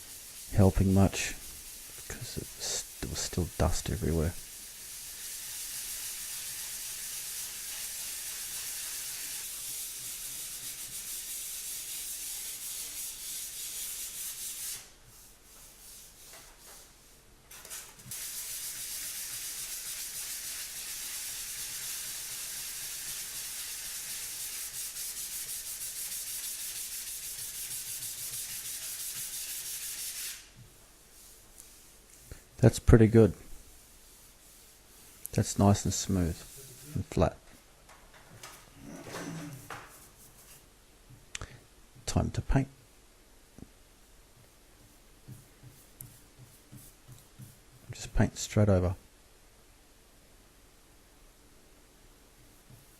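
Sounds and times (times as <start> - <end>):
sandpaper rasping on plaster: 0.0 - 32.6, 33.2 - 37.2, 44.8 - 48.0.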